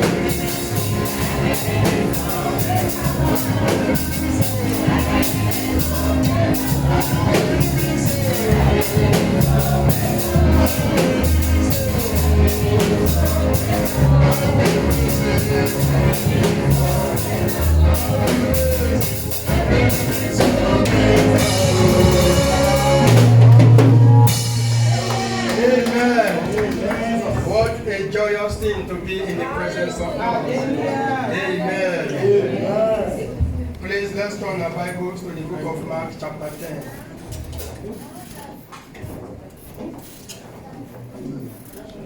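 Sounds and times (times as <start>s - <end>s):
bass guitar: 0.0s - 26.0s
guitar: 0.0s - 26.8s
singing: 0.0s - 26.9s
drum kit: 0.0s - 27.5s.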